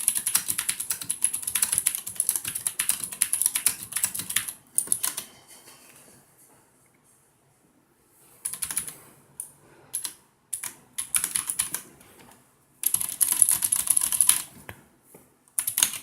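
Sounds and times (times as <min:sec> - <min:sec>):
clicky mechanical keyboard typing: 0:00.0 - 0:05.3, 0:08.4 - 0:09.0, 0:09.9 - 0:11.9, 0:12.8 - 0:14.5, 0:15.6 - 0:16.0.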